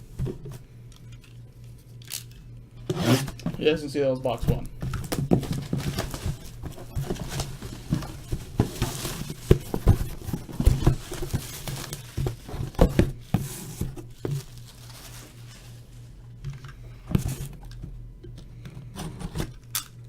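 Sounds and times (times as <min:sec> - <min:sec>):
steady low hum: 0:00.0 - 0:20.0
plastic wrap and cardboard crinkling: 0:04.3 - 0:16.2.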